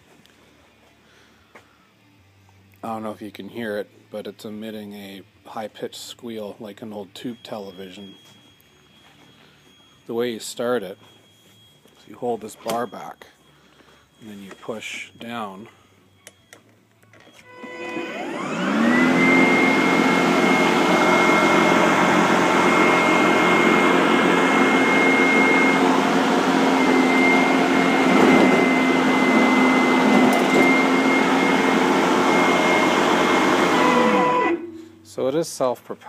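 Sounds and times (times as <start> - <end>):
electric lawnmower motor whine: 17.0 - 35.0
mower blade whirring: 17.4 - 35.0.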